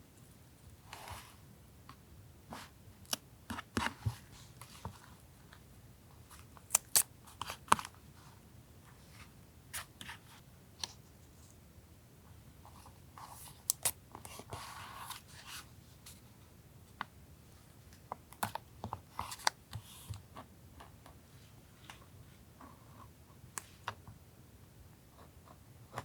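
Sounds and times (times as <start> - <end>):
crisp snaps: 6.7 - 7.1.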